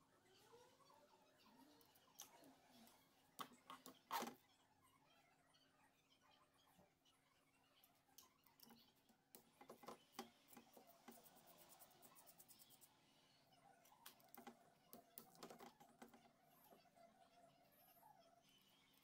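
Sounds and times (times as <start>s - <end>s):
faint clicks and light knocks: 13.9s - 16.8s.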